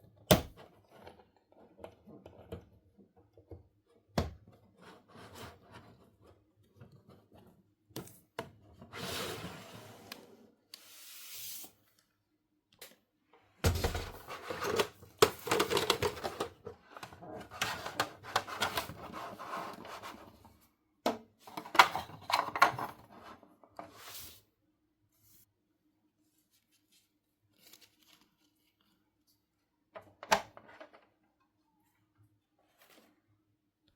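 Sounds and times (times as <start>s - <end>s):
hands handling plastic toy pieces: 14.7s - 16.6s.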